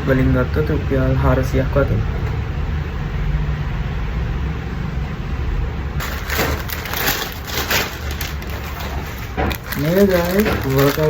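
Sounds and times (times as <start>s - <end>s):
plastic packaging crinkling: 6.0s - 11.0s.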